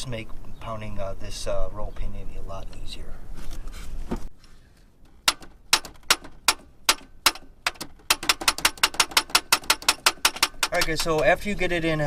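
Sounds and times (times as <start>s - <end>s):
hammer tapping metal: 5.2s - 11.3s.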